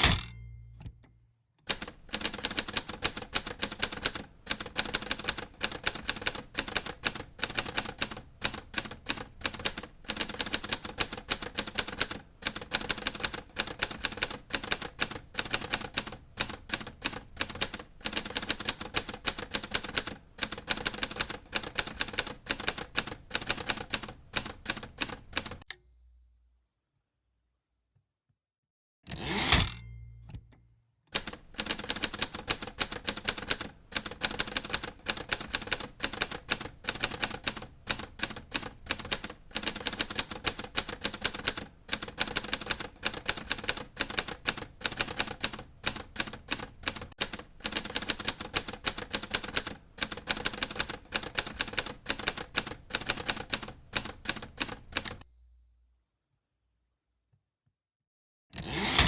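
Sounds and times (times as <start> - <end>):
typewriter key strikes: 0.0 - 1.1
typewriter carriage return clatter: 1.7 - 25.6, 31.2 - 55.2
typewriter bell ringing: 55.0 - 56.8.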